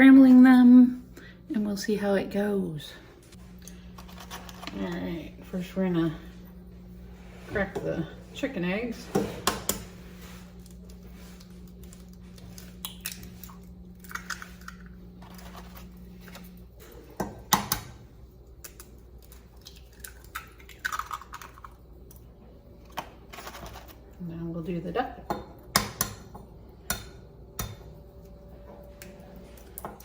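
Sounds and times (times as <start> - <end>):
eggs cracking against a bowl: 11.4 - 15.4, 18.6 - 22.3.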